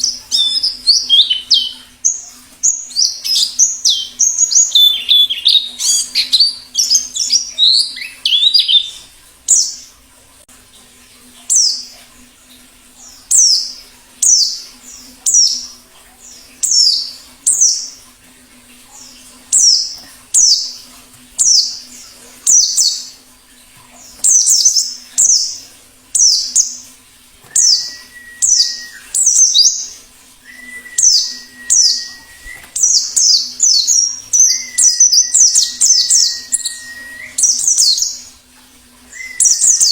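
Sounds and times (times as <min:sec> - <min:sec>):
bird chattering song: 0:00.0 - 0:09.8, 0:26.2 - 0:26.8, 0:27.5 - 0:38.3, 0:39.1 - 0:39.9
low whistle-like tone: 0:27.5 - 0:29.1, 0:30.4 - 0:32.8, 0:36.3 - 0:37.4
high downslurred bird calls: 0:27.5 - 0:38.4.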